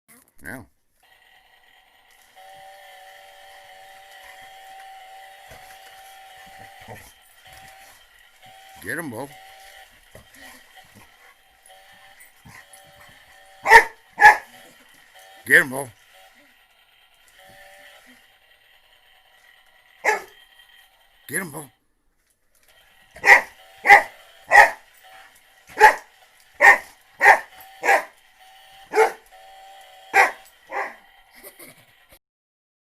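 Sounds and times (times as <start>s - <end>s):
chainsaw running: 1.0s - 21.8s, 22.5s - 32.2s
dog barking: 12.4s - 14.8s, 20.0s - 20.4s, 23.2s - 28.2s, 28.9s - 29.3s, 30.1s - 31.1s.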